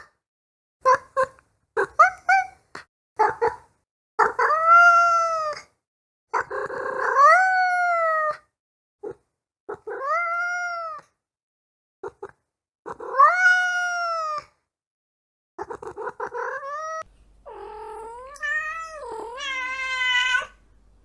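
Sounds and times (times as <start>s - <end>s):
cat meowing: 4.2s - 5.7s, 9.7s - 11.1s, 12.9s - 14.5s, 15.6s - 20.6s.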